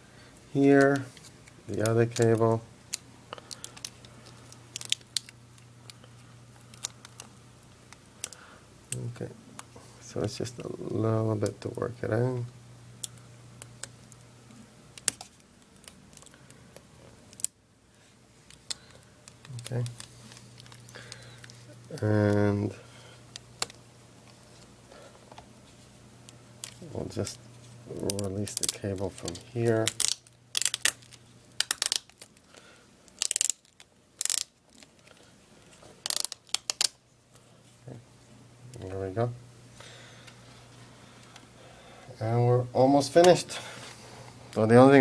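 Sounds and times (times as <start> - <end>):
crackling handling noise: 0.3 - 38.0
tape and plastic rubbing: 26.6 - 32.5, 33.1 - 37.0.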